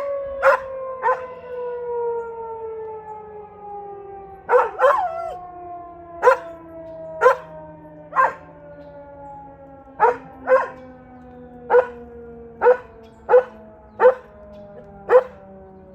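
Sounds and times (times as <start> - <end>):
siren wailing: 0.0 - 15.9
dog barking: 0.4 - 1.3, 4.5 - 5.2, 6.2 - 6.6, 7.2 - 7.5, 8.2 - 8.4, 10.0 - 10.8, 11.7 - 12.0, 12.6 - 14.3, 15.1 - 15.4.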